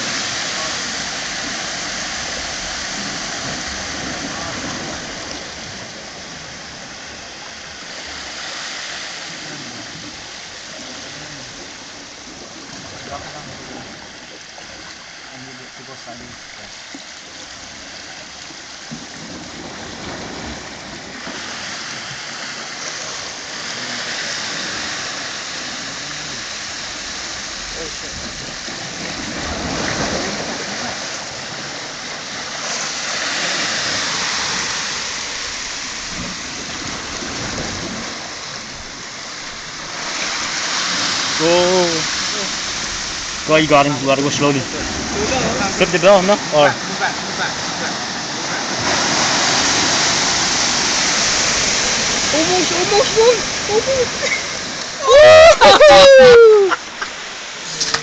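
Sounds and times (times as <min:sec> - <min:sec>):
seawater washing along shore: 0:00.0 - 0:58.0.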